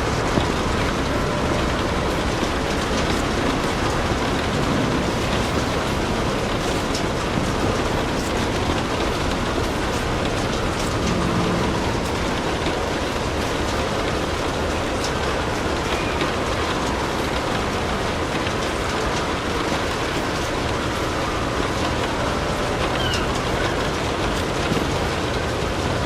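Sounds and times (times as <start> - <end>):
fireplace fire crackling: 0.0 - 26.0
steady rain: 0.0 - 26.0.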